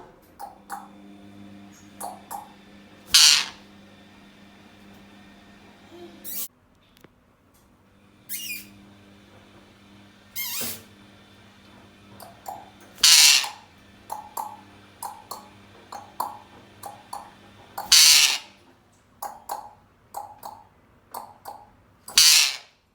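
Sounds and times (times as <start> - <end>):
parakeet chirps and clicks: 0.3 - 1.0, 1.7 - 3.6, 8.3 - 8.7, 10.4 - 10.8, 12.2 - 18.5, 19.2 - 22.7
parakeet screeching: 2.0 - 2.5, 3.1 - 3.6, 8.3 - 8.7, 10.4 - 10.8, 12.2 - 18.6, 22.1 - 22.7.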